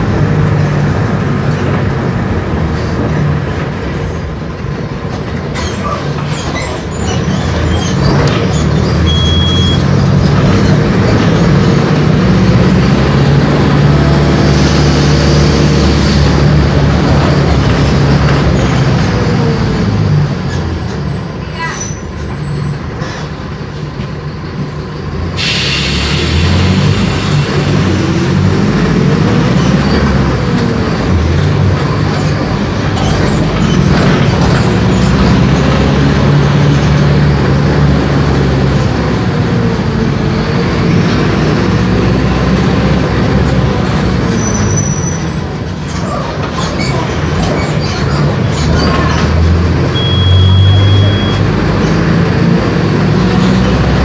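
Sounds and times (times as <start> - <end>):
bus diesel engine running: 0.0 - 54.0
road noise: 0.0 - 54.0
brief high tone: 50.0 - 51.5.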